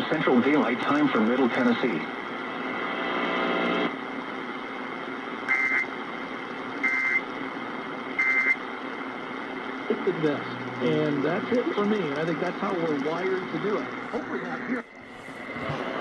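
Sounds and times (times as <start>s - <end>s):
radio hiss: 0.0s - 3.9s, 9.6s - 16.0s.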